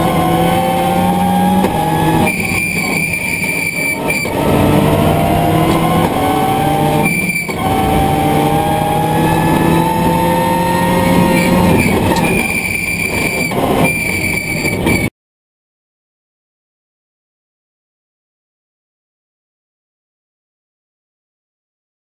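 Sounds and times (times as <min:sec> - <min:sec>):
rally car engine accelerating: 0:00.0 - 0:15.1.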